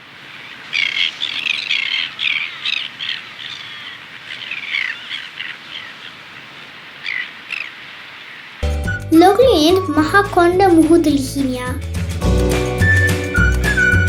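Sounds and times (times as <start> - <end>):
terns calling: 0.1 - 10.0.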